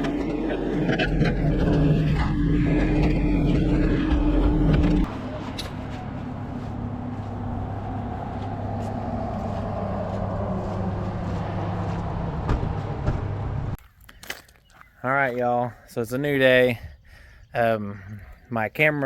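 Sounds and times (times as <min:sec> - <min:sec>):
engine running: 0:00.0 - 0:13.8.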